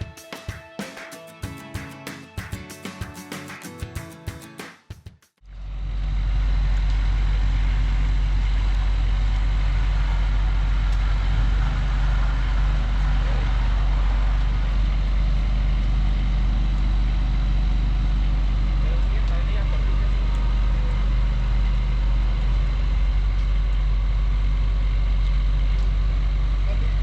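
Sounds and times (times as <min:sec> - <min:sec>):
truck diesel engine running: 0:05.5 - 0:27.0.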